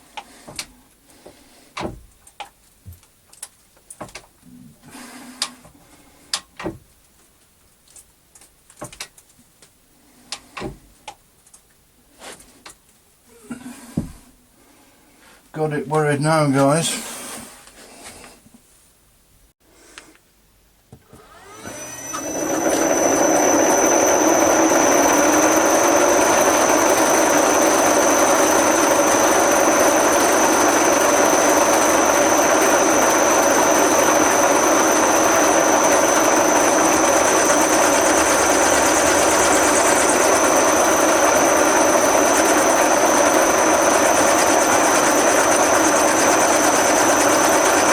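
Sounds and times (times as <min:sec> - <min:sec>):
metal lathe whining: 0:21.3 - 0:47.9.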